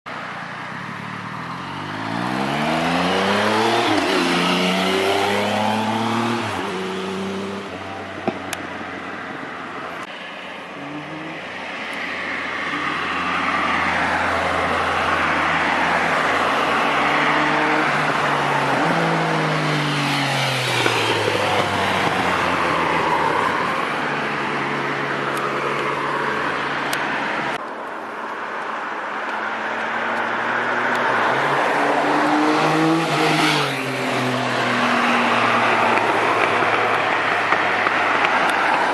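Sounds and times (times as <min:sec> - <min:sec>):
motorcycle engine revving: 0:01.4 - 0:07.8, 0:32.0 - 0:35.2.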